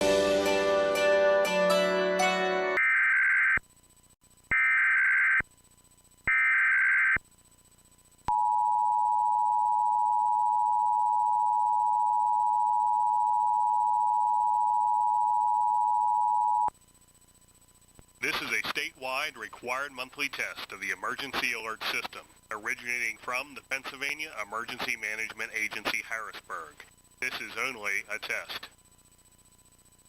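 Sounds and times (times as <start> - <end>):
digital warble data bursts: 18.2 - 28.7.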